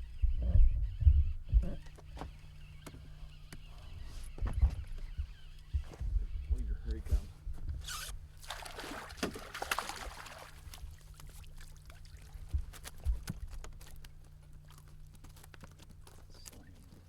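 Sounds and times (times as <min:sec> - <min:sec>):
low thumps: 0:00.0 - 0:03.1, 0:03.7 - 0:08.0
steady low hum: 0:00.0 - 0:17.0
water splashing and sloshing: 0:08.0 - 0:17.0.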